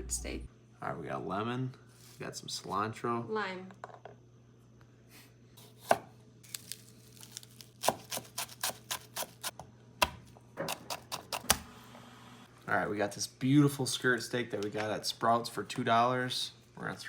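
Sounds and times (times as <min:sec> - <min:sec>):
knife chopping on cutting board: 0:05.6 - 0:06.1, 0:07.8 - 0:11.4.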